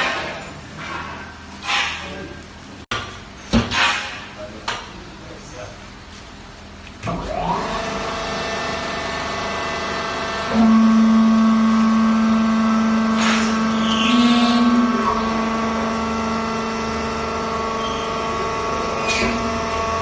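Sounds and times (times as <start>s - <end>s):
machine motor humming: 7.2s - 20.0s.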